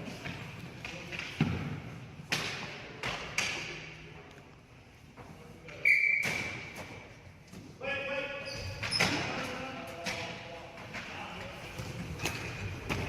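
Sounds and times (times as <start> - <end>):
hockey sticks and ball knocking: 8.8 - 13.0.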